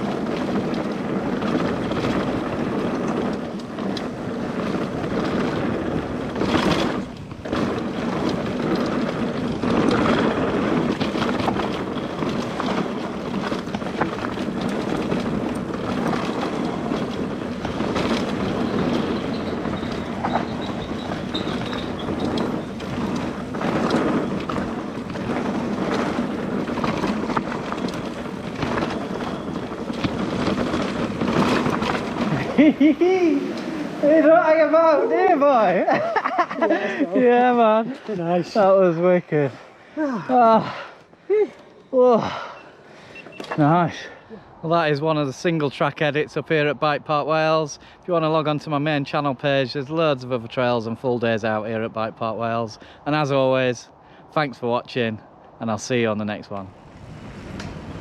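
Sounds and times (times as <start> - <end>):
wind on microphone: 0.0 - 35.2, 56.7 - 58.0
bike rattling and clattering: 0.0 - 44.2, 44.8 - 54.0, 54.6 - 58.0
tyres rolling over dirt: 0.0 - 53.8, 54.4 - 58.0.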